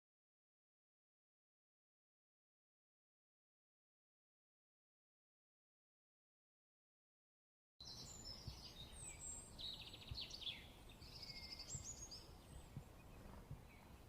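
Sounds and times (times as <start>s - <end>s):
small birds chirping and trilling: 7.8s - 14.0s.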